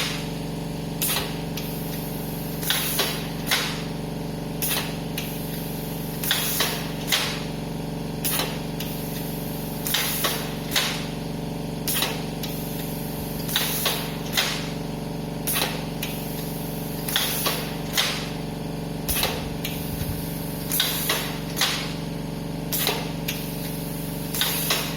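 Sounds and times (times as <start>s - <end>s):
air compressor hum: 0.0s - 24.9s
air cylinders hissing: 15.4s - 24.9s.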